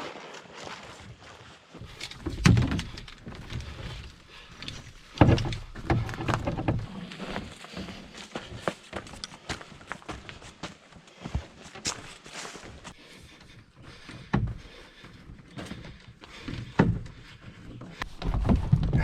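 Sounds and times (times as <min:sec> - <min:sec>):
canoe and gear knocking: 0:02.1 - 0:07.0.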